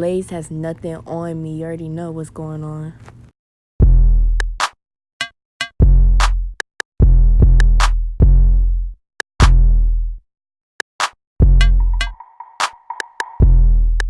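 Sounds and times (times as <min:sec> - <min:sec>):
snare and hi-hat hits: 0:07.6 - 0:08.0, 0:09.4 - 0:09.6, 0:11.0 - 0:13.6
deep bass drum hits: 0:11.4 - 0:12.2.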